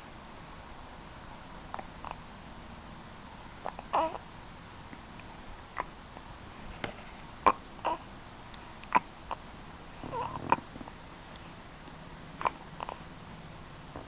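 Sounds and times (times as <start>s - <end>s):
baby vocal sound: 3.6s - 4.2s, 7.4s - 8.1s, 10.0s - 10.7s.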